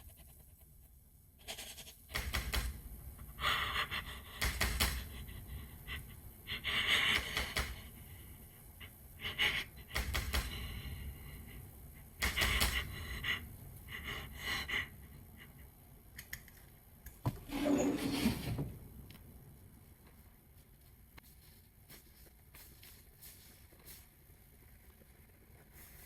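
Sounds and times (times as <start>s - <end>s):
heavy banging on door: 9.9s - 10.8s.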